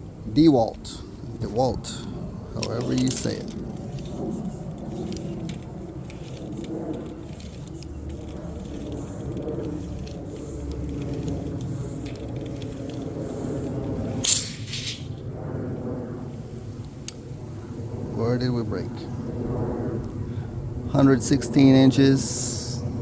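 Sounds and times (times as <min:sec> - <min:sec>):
low background rumble: 0:00.0 - 0:21.2
tape measure blade clicking: 0:14.2 - 0:15.1.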